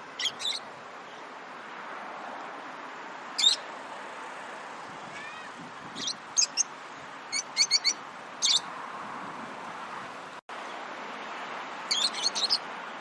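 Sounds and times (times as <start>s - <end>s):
lovebirds chirping: 0.0s - 1.3s, 3.4s - 3.7s, 5.2s - 6.7s, 7.3s - 8.7s, 11.9s - 12.7s.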